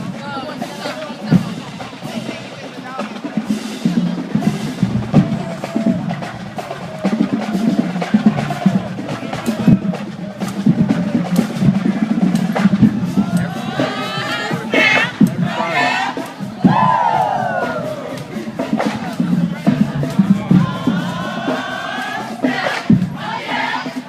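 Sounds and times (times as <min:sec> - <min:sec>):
snare drum strikes: 0:21.4 - 0:23.8.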